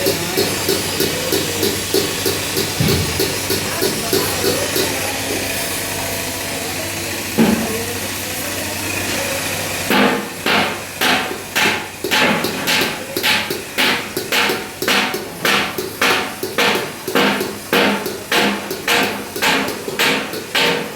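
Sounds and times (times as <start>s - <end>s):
knock: 2.8s - 3.3s
hammer striking metal: 9.9s - 20.9s.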